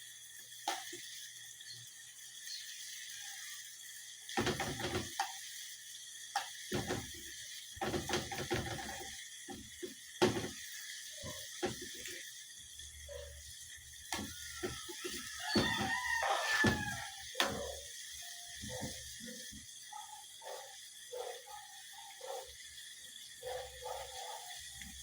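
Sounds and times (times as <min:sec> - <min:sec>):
steady hiss: 0:00.0 - 0:25.0
cooking utensils clattering: 0:04.4 - 0:05.3.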